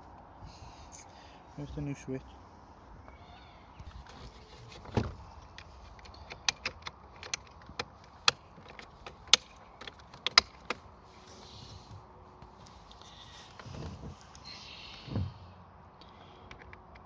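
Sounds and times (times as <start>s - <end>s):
sharp clicks and taps of car parts: 3.8s - 10.9s, 16.0s - 17.0s.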